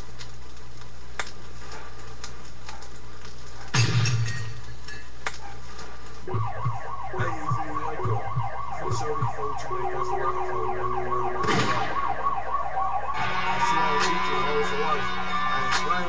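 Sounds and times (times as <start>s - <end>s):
wailing siren sound: 6.2s - 16.0s
deep rhythmic bass thumps: 6.3s - 10.1s.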